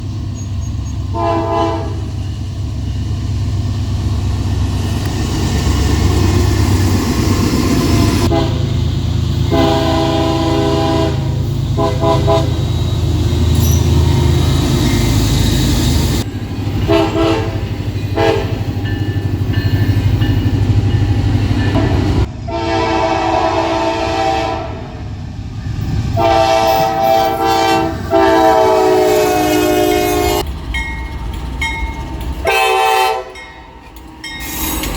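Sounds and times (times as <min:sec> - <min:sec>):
low rumble of moving train: 0:00.0 - 0:34.9
locomotive air horn blasts: 0:01.1 - 0:02.2, 0:08.2 - 0:12.7, 0:16.8 - 0:18.6, 0:21.8 - 0:25.0, 0:26.1 - 0:30.5, 0:32.4 - 0:33.4.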